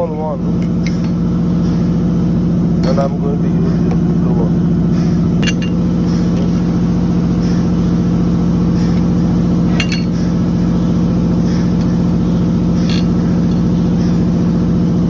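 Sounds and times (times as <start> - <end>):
loud machine hum: 0.0 - 15.0
metallic clinks of screws and tools: 0.6 - 1.3, 2.8 - 3.3, 5.4 - 5.8, 9.7 - 10.2, 11.8 - 12.2, 12.8 - 13.7.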